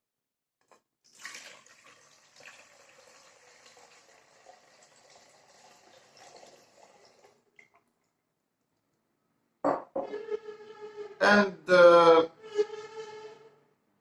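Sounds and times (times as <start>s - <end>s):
water running into a pan: 1.1s - 7.8s.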